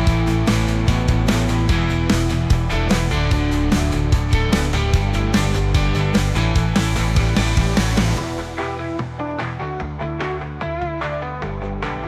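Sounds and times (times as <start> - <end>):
steady drum beat: 0.0 - 9.0
distorted rock guitar: 0.0 - 12.0.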